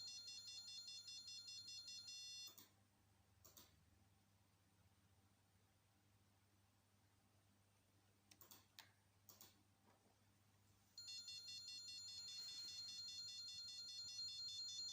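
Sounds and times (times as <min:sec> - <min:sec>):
electronic alarm buzzer tone: 0:00.0 - 0:02.6.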